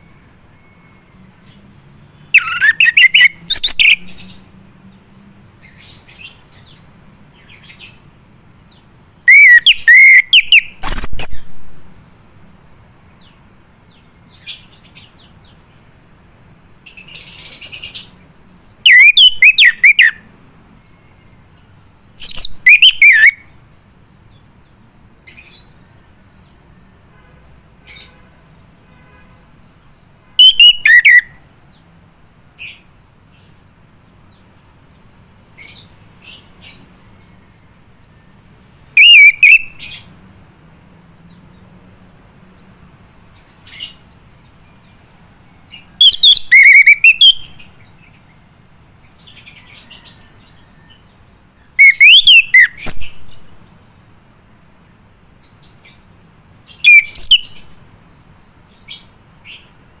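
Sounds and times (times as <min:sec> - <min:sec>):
thrush singing whistles and trills: 0:00.0 - 0:04.5, 0:05.6 - 0:11.9, 0:16.9 - 0:20.3, 0:22.2 - 0:23.6, 0:30.4 - 0:31.6, 0:35.6 - 0:40.1, 0:45.6 - 0:48.4, 0:49.0 - 0:53.7, 0:55.4 - 0:59.8.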